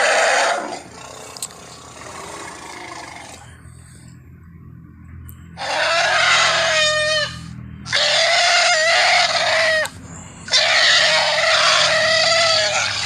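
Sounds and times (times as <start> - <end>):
elephant-like trumpet calls: 5.6 - 9.9, 10.5 - 13.0.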